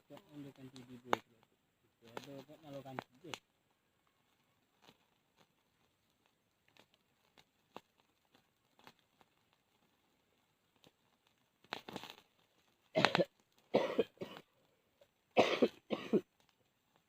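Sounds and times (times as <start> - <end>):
person coughing: 13.0 - 14.4, 15.4 - 16.2.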